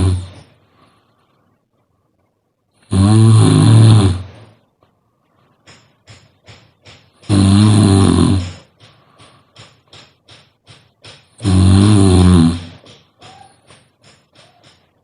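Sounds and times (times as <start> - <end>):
person snoring: 0.0 - 0.5, 2.8 - 4.6, 7.3 - 8.7, 11.4 - 12.8.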